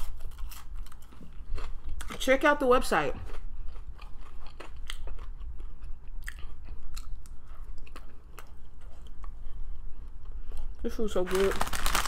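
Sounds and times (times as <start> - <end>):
chewing and biting food: 0.0 - 2.2, 3.0 - 10.2.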